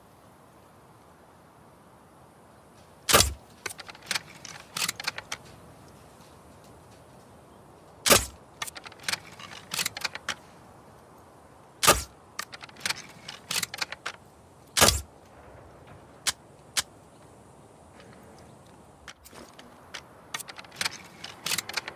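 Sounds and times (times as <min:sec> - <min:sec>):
crossbow shot snap: 0:03.1 - 0:03.4, 0:11.8 - 0:12.1
crossbow mechanism clicks and rattles: 0:03.1 - 0:15.4, 0:18.0 - 0:21.9.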